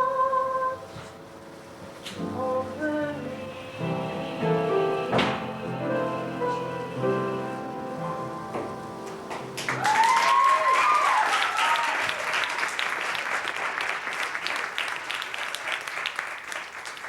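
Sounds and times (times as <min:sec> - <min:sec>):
song ending: 0:02.1 - 0:09.7
audience cheering: 0:09.6 - 0:16.0
audience applause: 0:09.6 - 0:17.0.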